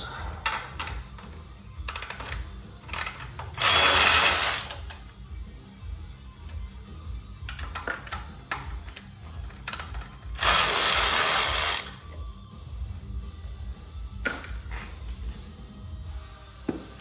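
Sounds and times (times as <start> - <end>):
background music: 0.0 - 17.0
power tool driving bolt: 1.9 - 5.0, 9.6 - 12.0.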